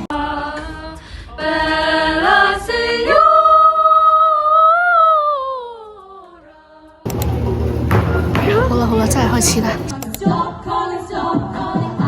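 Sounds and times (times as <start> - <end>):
voices singing a cappella: 0.0 - 7.4, 8.3 - 12.0.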